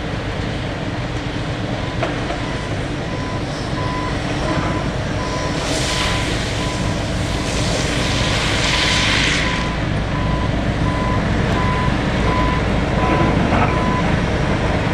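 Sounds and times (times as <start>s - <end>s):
diesel engine rumble: 0.0s - 14.9s
reversing alarm beeping: 1.8s - 7.6s, 9.4s - 14.2s
hiss: 5.4s - 9.9s.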